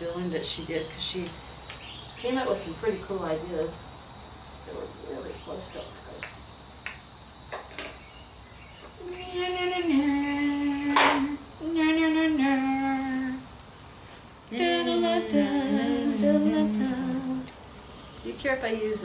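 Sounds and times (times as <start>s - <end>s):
woman humming: 9.0s - 13.4s, 14.5s - 17.5s.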